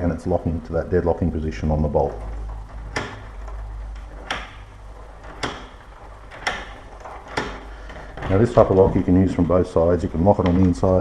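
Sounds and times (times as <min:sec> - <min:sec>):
deadbolt lock clicking: 0:02.3 - 0:08.4.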